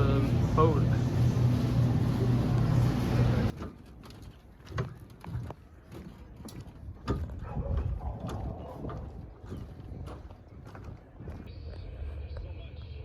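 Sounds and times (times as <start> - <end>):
engine humming: 0.0 - 6.4.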